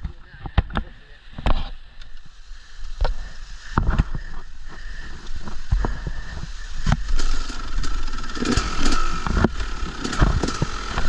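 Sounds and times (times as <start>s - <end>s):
motorcycle engine running: 3.2s - 11.0s.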